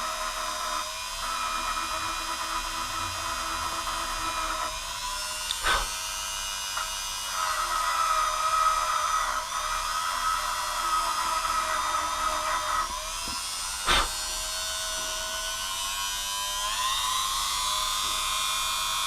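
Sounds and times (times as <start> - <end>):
rotary tool whining: 0.0 - 19.0
grinding rust off metal: 1.3 - 16.0.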